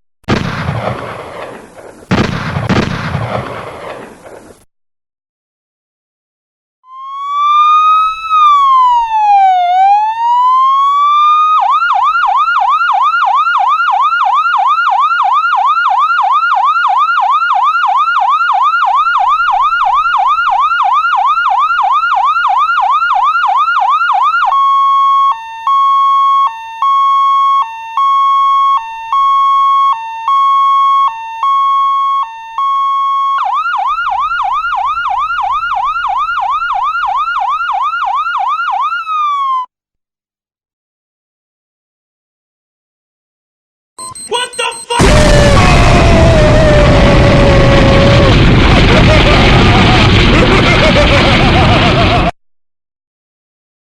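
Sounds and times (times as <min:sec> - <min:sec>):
emergency vehicle siren: 0:06.8 - 0:39.7, 0:44.0 - 0:52.3.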